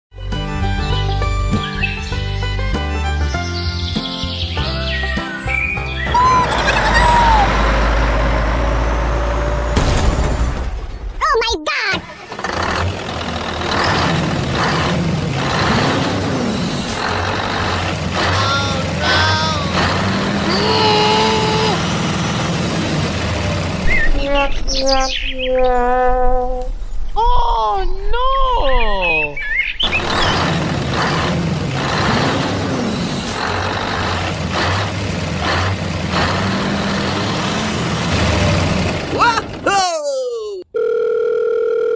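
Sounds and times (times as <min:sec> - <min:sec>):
vehicle engine humming: 0:05.5 - 0:11.1, 0:12.1 - 0:24.7, 0:29.8 - 0:39.9.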